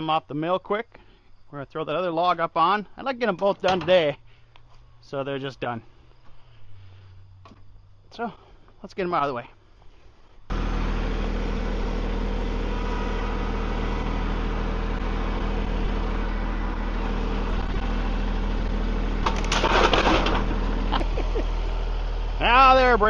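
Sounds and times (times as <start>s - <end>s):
engine idling: 10.5s - 23.0s
noisy clatter: 19.2s - 21.3s.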